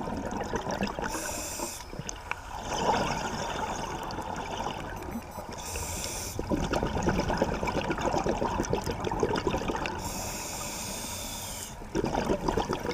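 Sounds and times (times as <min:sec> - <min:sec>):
exhaled bubbles gurgling: 0:00.0 - 0:05.6, 0:06.4 - 0:10.6, 0:11.6 - 0:12.9
regulator inhale hiss: 0:01.1 - 0:01.9, 0:05.6 - 0:06.5, 0:10.0 - 0:11.8.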